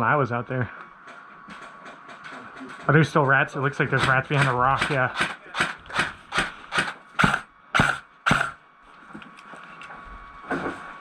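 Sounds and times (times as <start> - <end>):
crunching strokes: 4.0 - 8.6.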